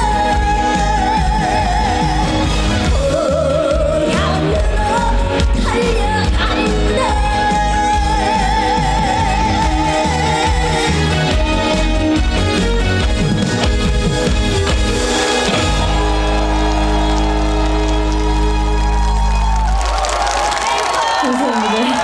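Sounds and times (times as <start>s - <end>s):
woman singing with vibrato: 0.0s - 12.0s
band accompaniment with heavy bass: 0.0s - 22.0s.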